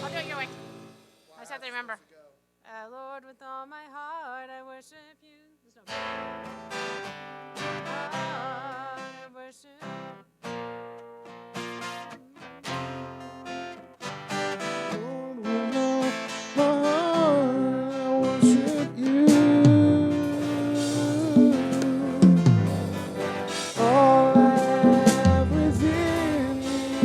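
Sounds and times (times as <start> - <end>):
acoustic guitar strumming chords: 0.0 - 1.2, 5.9 - 9.2, 9.8 - 27.0
person singing: 7.6 - 10.0, 14.9 - 27.0.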